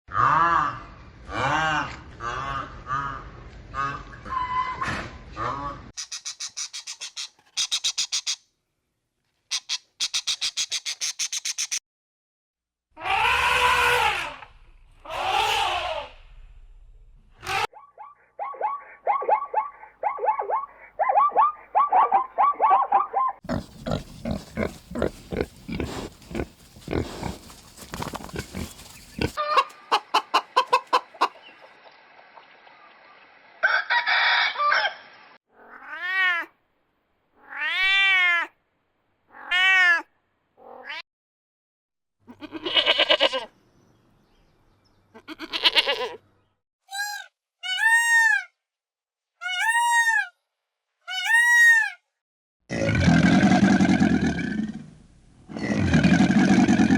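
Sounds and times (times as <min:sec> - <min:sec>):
farm animal calls: 0:00.1 - 0:08.4, 0:17.5 - 0:31.7, 0:45.1 - 0:46.2.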